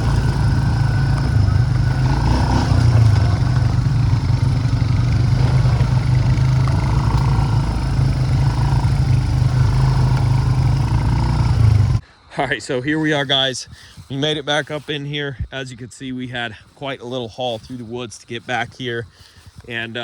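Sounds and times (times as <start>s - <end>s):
atv engine running: 0.0s - 12.0s.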